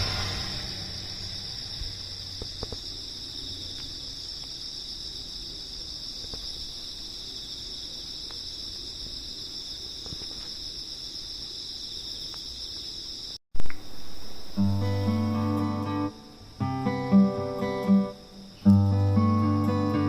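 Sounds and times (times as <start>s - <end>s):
brief loud burst: 0.0s - 2.4s
insects chirring: 0.0s - 20.0s.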